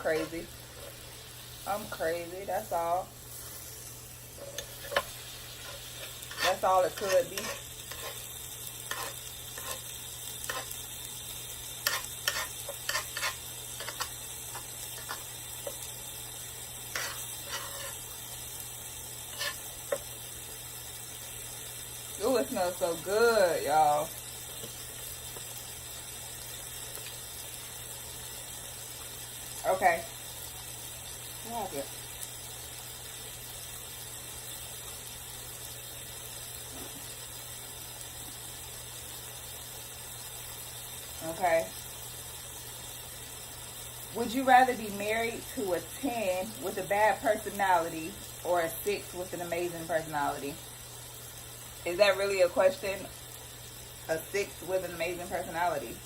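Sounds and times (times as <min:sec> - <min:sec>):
utensil scraping pan: 0:00.0 - 0:01.1, 0:04.3 - 0:10.8, 0:11.8 - 0:15.8, 0:16.9 - 0:18.1, 0:19.3 - 0:20.0
steak sizzling: 0:00.0 - 0:56.0.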